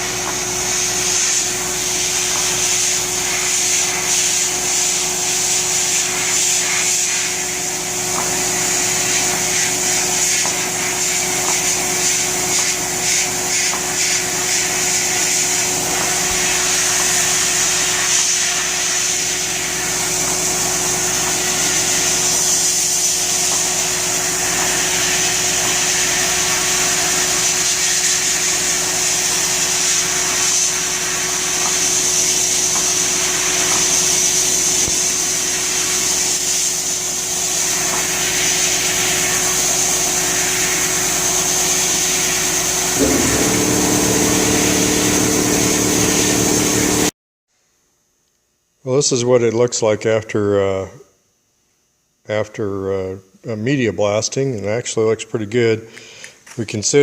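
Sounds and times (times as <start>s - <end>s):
blast gun hissing: 42.9s - 47.1s
steady hum: 42.9s - 47.1s.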